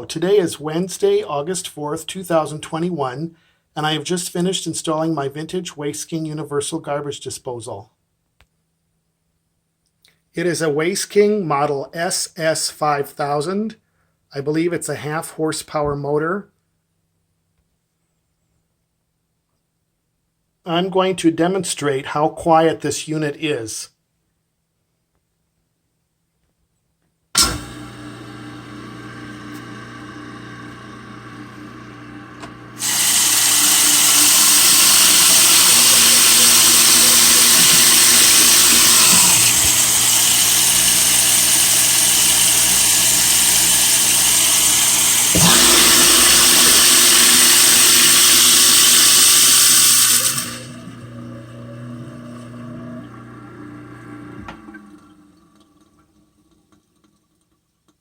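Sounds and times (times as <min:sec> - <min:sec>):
garbage disposal motor humming: 0:27.4 - 0:56.6
tap water rushing into sink: 0:32.4 - 0:58.0.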